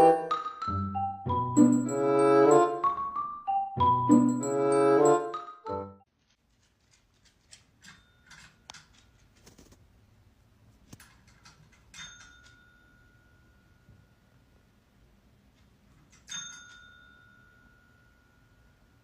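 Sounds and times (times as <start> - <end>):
light bell-like dings: 12.0 - 14.5, 16.1 - 19.0.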